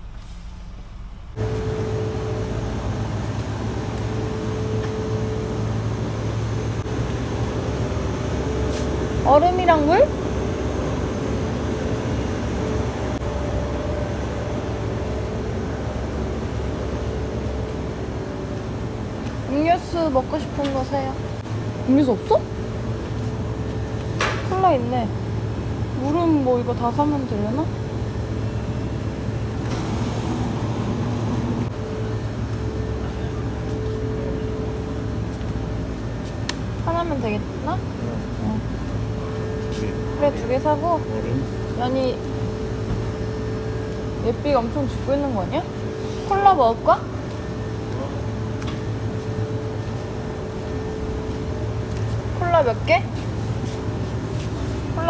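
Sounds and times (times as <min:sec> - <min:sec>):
low mechanical hum and rumble: 0:00.0 - 0:55.0.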